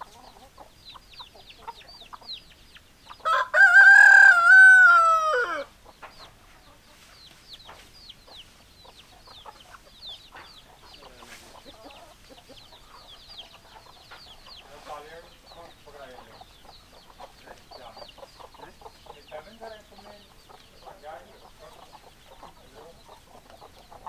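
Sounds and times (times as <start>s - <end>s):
chicks cheeping: 0.0s - 24.0s
hen clucking: 0.0s - 24.0s
rooster crowing: 3.2s - 5.7s.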